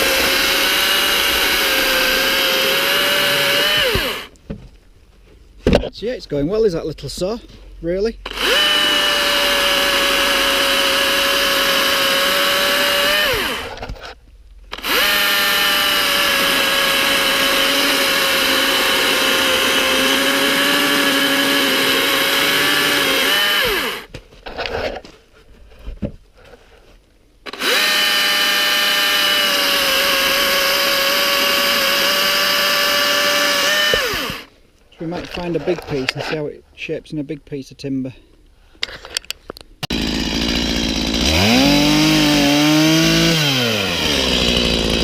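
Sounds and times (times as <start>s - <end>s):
battery chainsaw motor whining: 0.0s - 4.3s, 8.2s - 13.8s, 14.7s - 24.1s, 27.5s - 34.5s, 39.8s - 45.0s.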